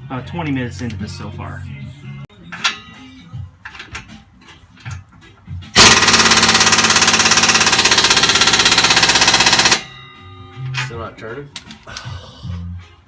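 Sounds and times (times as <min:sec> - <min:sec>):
impact wrench hammering: 0:05.8 - 0:10.3.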